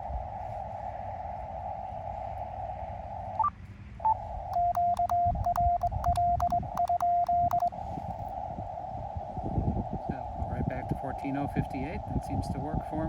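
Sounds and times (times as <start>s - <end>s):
morse code sidetone beeps: 4.1s - 7.7s
short rising beep: 4.1s - 7.7s
key paddle clicks: 4.6s - 7.7s.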